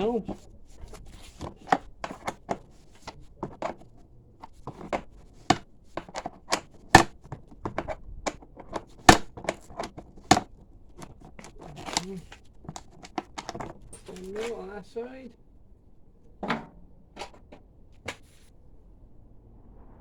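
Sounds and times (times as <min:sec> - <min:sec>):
hand tools clicking on metal: 0:00.0 - 0:14.6.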